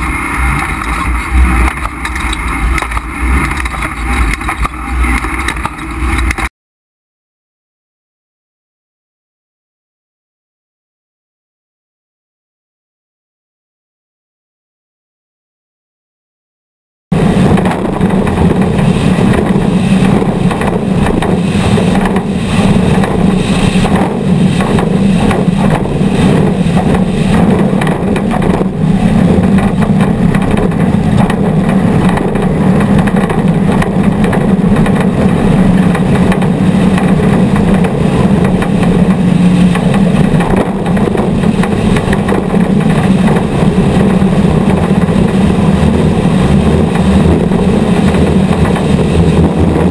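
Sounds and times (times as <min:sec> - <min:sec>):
race vehicle engine running hard: 0:00.0 - 0:06.5, 0:17.1 - 0:49.9
rough course noise: 0:00.0 - 0:06.5, 0:17.1 - 0:49.9.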